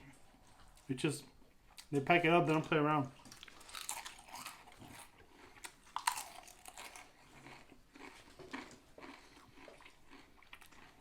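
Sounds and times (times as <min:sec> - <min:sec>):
crackly chewing: 0:00.1 - 0:11.0
sandwich bite crunch: 0:03.4 - 0:11.0.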